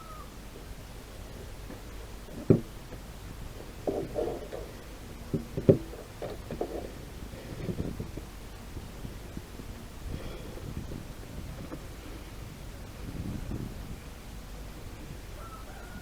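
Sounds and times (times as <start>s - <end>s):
rattling clunks: 1.7s - 7.9s
sharp knocks: 2.3s - 2.8s.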